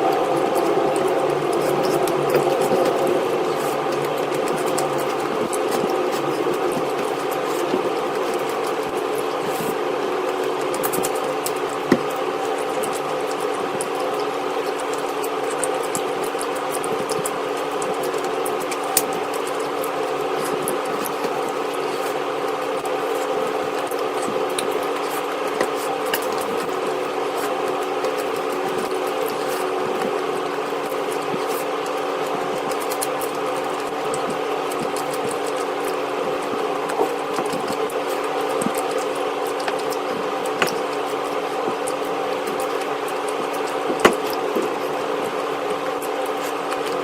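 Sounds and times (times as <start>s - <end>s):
chewing clicks: 0.0s - 47.0s
motor hum: 0.0s - 47.0s.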